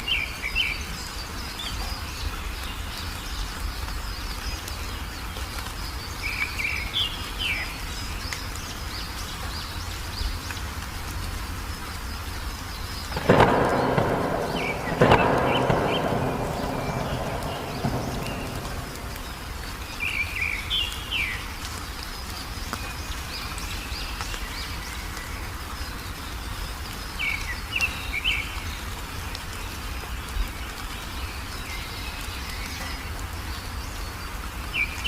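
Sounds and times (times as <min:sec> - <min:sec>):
songbirds chirping: 0:00.0 - 0:35.0
low background rumble: 0:12.8 - 0:20.4.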